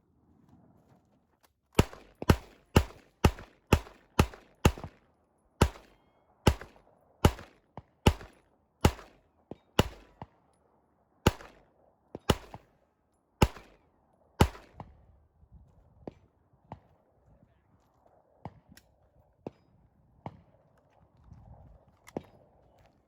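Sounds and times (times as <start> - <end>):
gunshots: 1.8 - 5.0, 5.6 - 9.2, 9.8 - 10.2, 11.2 - 11.6, 12.2 - 12.7, 13.4 - 13.8, 14.4 - 14.8.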